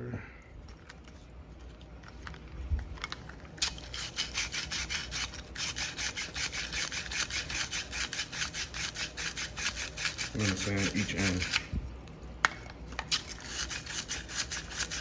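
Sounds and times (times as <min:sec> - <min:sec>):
sanding copper pipe by hand: 0:03.6 - 0:11.7, 0:13.2 - 0:15.0.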